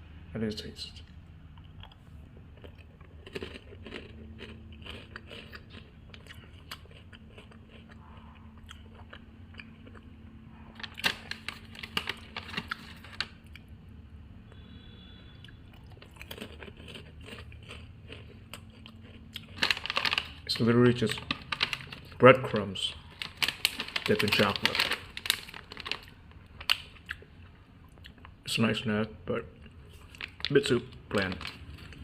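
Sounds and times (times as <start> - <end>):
steady low hum: 0.0 - 23.8
chewing and crunching snack: 1.0 - 13.7, 15.4 - 28.4, 29.6 - 32.0.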